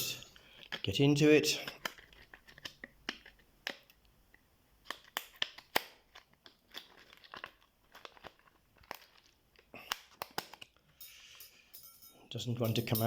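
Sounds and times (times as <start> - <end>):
plastic packaging crackling: 4.8 - 10.8.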